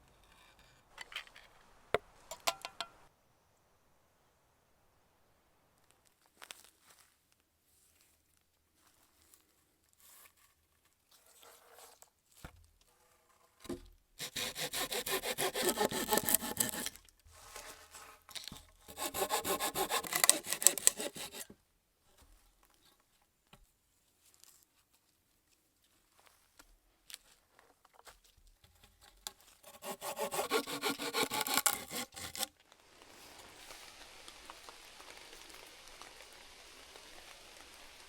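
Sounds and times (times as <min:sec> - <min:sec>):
hand saw cutting wood: 0:14.2 - 0:17.0, 0:18.9 - 0:21.5, 0:29.6 - 0:32.6.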